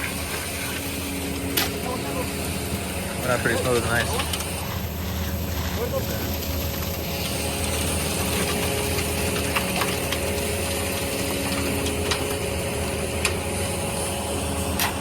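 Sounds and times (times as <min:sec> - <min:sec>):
engine running with low hum: 0:00.0 - 0:15.0.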